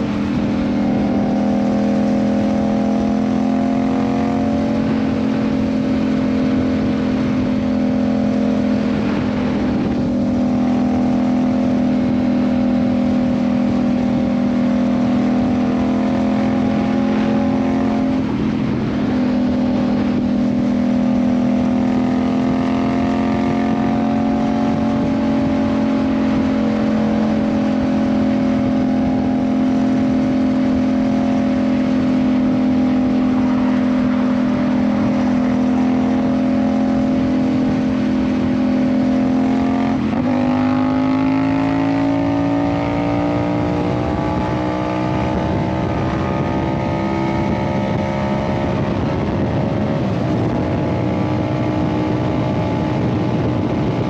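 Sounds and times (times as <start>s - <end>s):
motorcycle engine running: 0.0s - 54.0s
wind rush: 0.0s - 54.0s.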